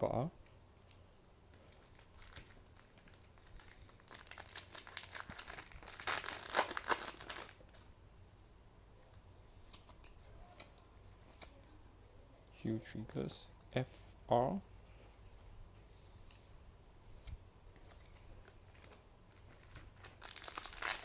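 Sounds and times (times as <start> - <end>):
foil pack tearing and crinkling: 1.9 - 7.6, 18.7 - 21.0.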